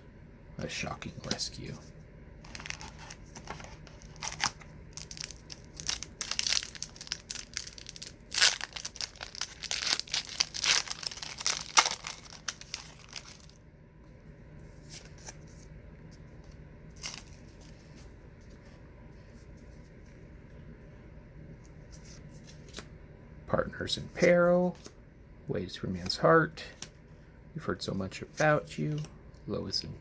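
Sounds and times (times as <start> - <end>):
wrapper crinkling and tearing: 2.5 - 13.6, 17.0 - 17.7.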